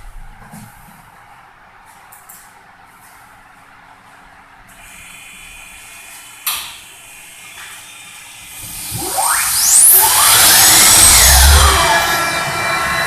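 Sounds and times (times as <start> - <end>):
turbocharger whine rising in pitch: 7.9 - 13.0
rushing air: 8.5 - 13.0.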